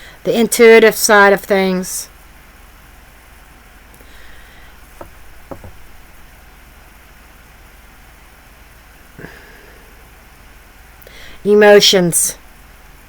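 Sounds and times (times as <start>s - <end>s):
low room hiss: 0.0s - 13.0s
faint short taps: 5.0s - 5.8s.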